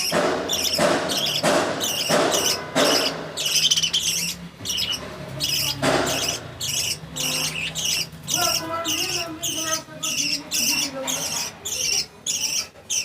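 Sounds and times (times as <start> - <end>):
budgerigars chirping: 0.0 - 13.0
harsh raspy squawks: 0.0 - 13.0.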